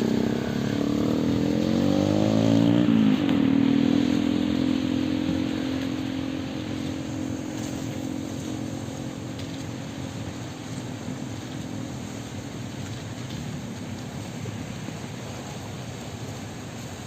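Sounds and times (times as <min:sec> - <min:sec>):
motorcycle engine accelerating: 0:00.0 - 0:11.8.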